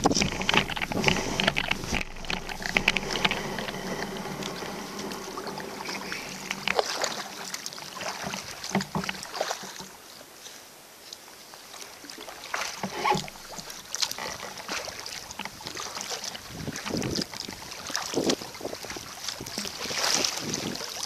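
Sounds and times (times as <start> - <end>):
paddle knocking hull: 0.0 - 10.0, 12.7 - 17.3
paddle splashing water: 0.0 - 21.0.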